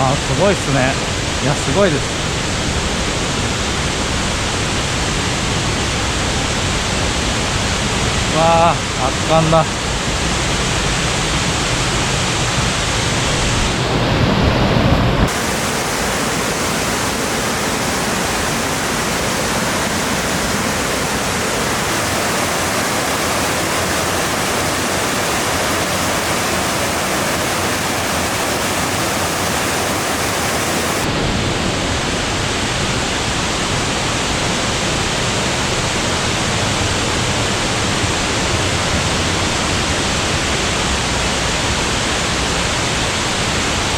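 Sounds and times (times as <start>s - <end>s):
waterfall pouring: 15.3s - 31.1s.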